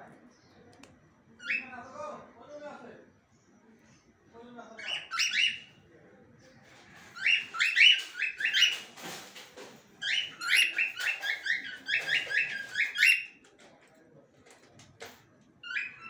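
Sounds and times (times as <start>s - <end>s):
cockatiel calling: 4.8s - 5.7s.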